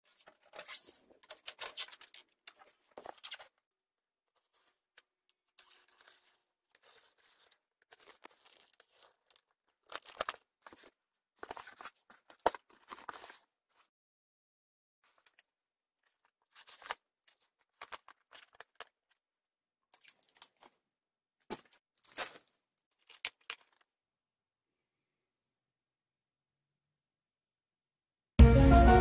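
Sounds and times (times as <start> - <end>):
packaging torn and crinkled: 6.8 - 10.8.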